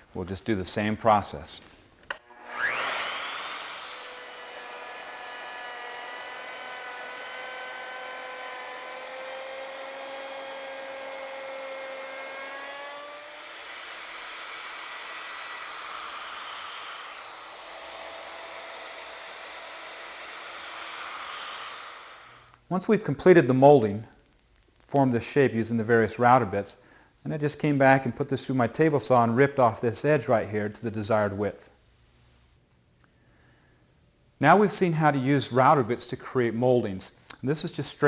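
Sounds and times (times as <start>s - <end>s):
router whining while milling wood: 2.1s - 22.6s.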